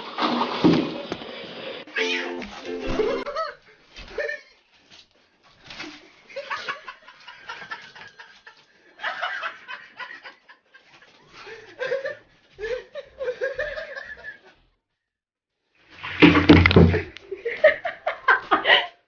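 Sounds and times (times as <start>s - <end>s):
people laughing: 2.8s - 4.6s, 6.3s - 14.6s, 16.9s - 19.0s.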